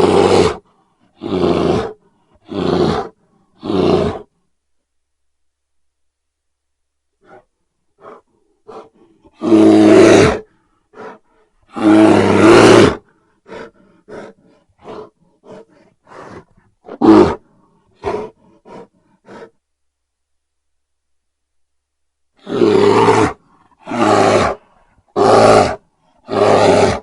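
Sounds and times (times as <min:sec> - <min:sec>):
bear roaring: 0:00.0 - 0:04.4, 0:07.2 - 0:19.6, 0:22.4 - 0:27.0.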